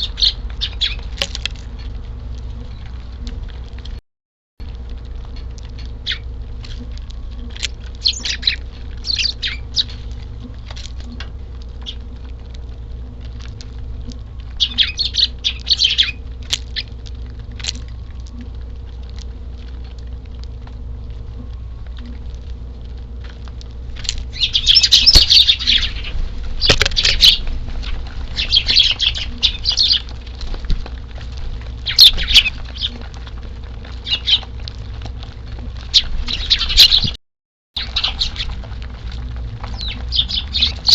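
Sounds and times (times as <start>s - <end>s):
sparrows chirping: 0.0s - 2.0s, 5.4s - 12.2s, 13.9s - 17.0s, 24.0s - 30.6s, 31.7s - 33.0s, 33.9s - 34.6s, 35.8s - 37.2s, 37.8s - 38.7s, 39.6s - 40.9s
low rumble: 0.0s - 4.0s, 4.6s - 37.2s, 37.8s - 40.9s.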